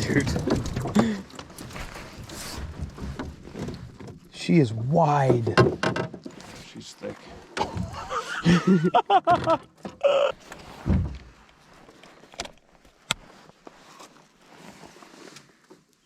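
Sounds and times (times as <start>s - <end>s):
wordless vocal cries: 8.1s - 10.4s
dull thump: 10.7s - 11.4s.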